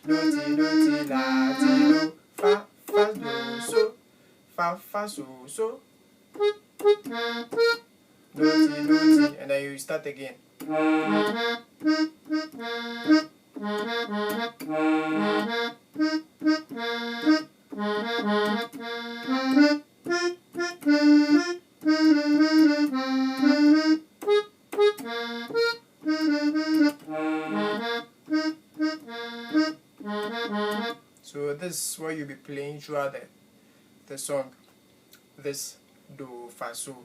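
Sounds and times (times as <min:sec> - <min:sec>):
keyboard accordion chord groove: 0:00.0 - 0:04.0, 0:06.4 - 0:09.6, 0:10.6 - 0:31.1.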